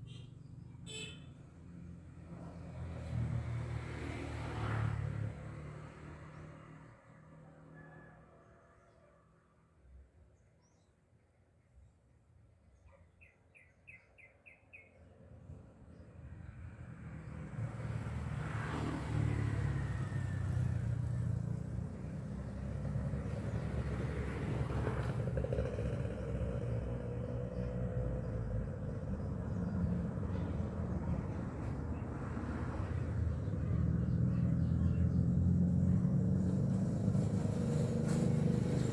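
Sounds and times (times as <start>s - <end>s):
vehicle engine rumble: 17.2s - 38.9s.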